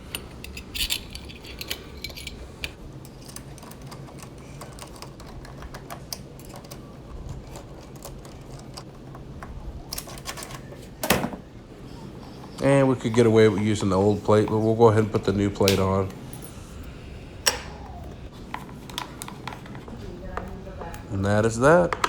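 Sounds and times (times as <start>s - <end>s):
metallic clicks of door knob parts: 17.4s - 18.0s.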